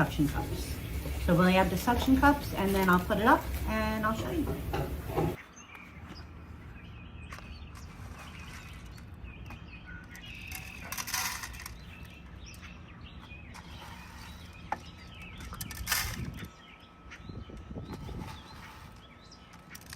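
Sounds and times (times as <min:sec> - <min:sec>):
rustling bursts: 0:00.0 - 0:05.4
steady low hum: 0:00.0 - 0:05.4
small birds chirping: 0:00.0 - 0:19.9.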